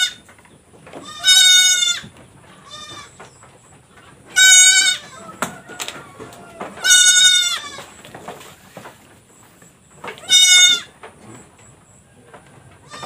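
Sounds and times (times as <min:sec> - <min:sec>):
goat screaming: 0:01.0 - 0:03.1, 0:04.3 - 0:05.5, 0:06.2 - 0:08.0, 0:10.2 - 0:10.9.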